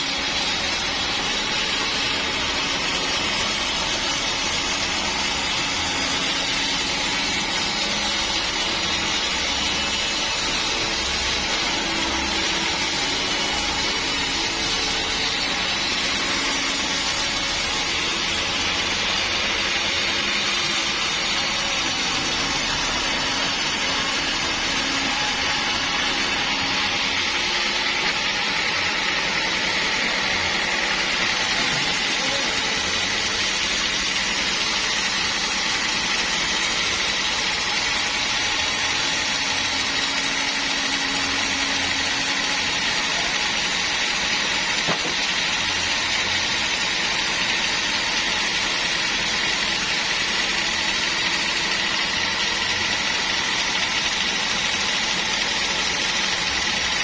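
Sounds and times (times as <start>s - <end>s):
high mechanical whine: 0.0s - 57.0s
sawmill machinery running: 0.0s - 57.0s.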